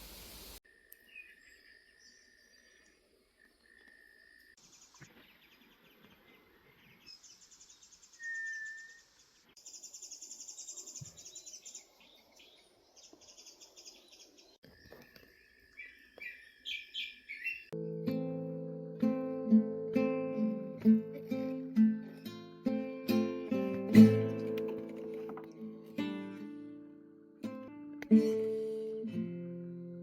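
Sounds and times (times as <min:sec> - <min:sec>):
whistled bird note: 0:08.2 - 0:09.2.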